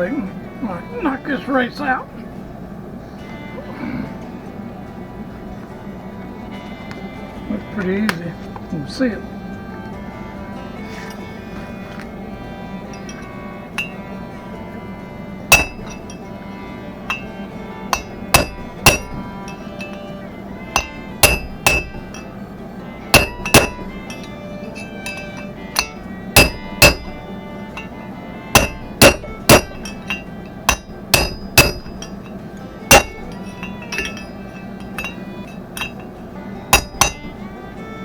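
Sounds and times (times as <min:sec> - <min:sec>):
hammer striking metal: 0:12.9 - 0:14.2, 0:15.5 - 0:22.4, 0:23.0 - 0:37.5.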